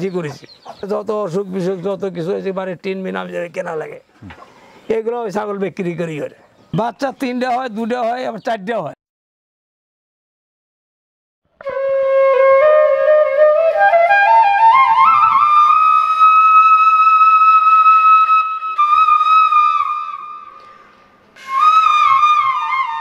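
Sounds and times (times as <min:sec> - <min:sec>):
solo flute melody: 0:11.6 - 0:20.6, 0:21.4 - 0:23.0.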